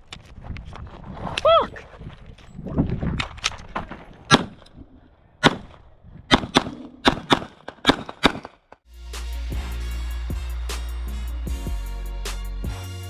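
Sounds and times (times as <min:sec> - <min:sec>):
music with heavy bass: 0:08.9 - 0:13.0.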